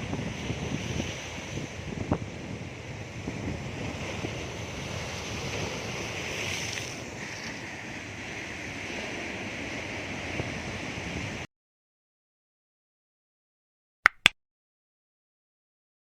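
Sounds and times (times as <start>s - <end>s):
rough surf: 0.0s - 11.5s
wind on microphone: 0.0s - 11.5s.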